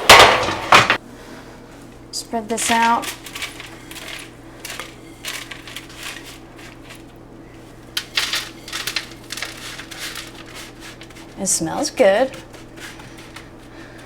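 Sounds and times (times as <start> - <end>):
steady low hum: 0.0 - 14.0
granola scraped across sheet pan: 8.1 - 14.0.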